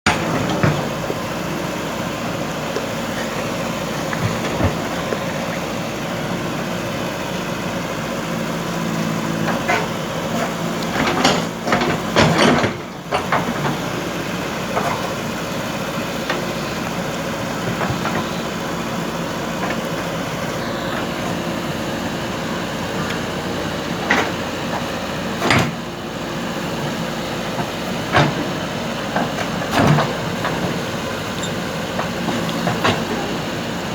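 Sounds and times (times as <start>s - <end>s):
diesel engine running: 0.0s - 33.9s
digging knocks: 0.1s - 5.7s.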